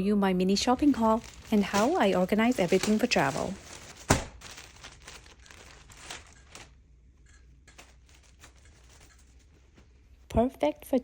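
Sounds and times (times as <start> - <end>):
packaging crinkling and rustling: 0.6 - 6.8, 7.7 - 9.9.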